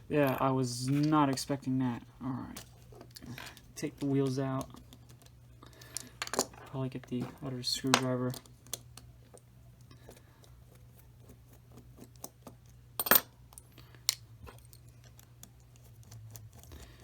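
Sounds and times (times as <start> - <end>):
small parts being handled: 2.5 - 10.5.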